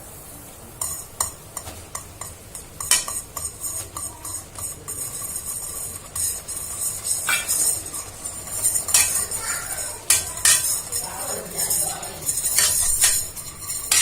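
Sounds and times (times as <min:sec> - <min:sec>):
spoon scraping cooking pan: 0:00.8 - 0:14.0.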